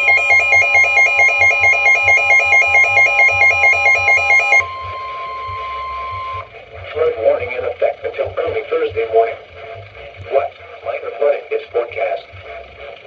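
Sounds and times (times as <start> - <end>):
steady alert tone: 0.0 - 6.4
warbling alarm: 0.0 - 6.5.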